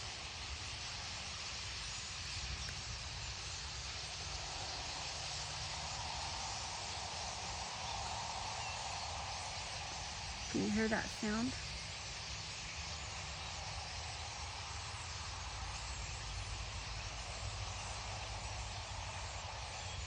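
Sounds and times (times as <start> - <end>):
large flock of birds calling: 0.4 - 13.5.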